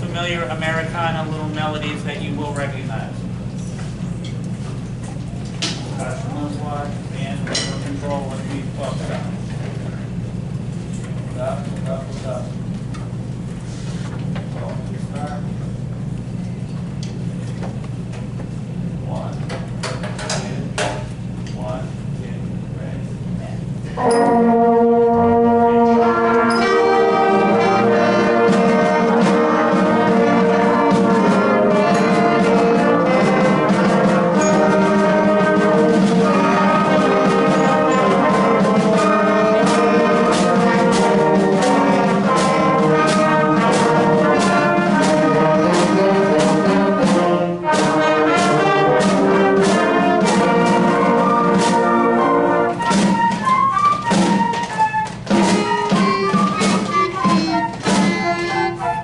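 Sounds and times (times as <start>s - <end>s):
drums keeping a steady beat: 22.6s - 59.0s
brass instruments: 23.9s - 59.0s
concert band playing: 23.9s - 59.0s.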